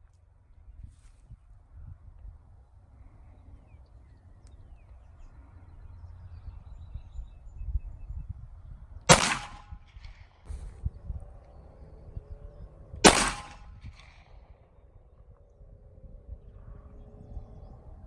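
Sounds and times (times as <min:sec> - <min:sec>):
low rumble: 0:00.6 - 0:18.0
faint gunshot crack: 0:09.1 - 0:10.2, 0:13.0 - 0:14.4
pistol gunshot with echo: 0:09.1 - 0:10.3, 0:13.0 - 0:14.6.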